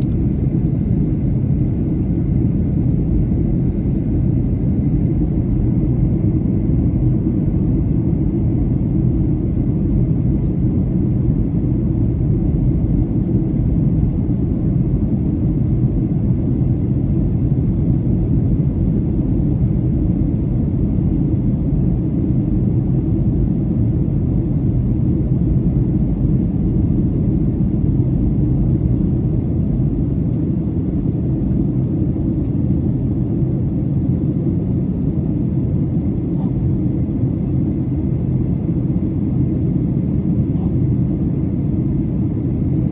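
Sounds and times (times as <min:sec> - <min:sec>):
airplane cabin rumble: 0:00.0 - 0:42.9.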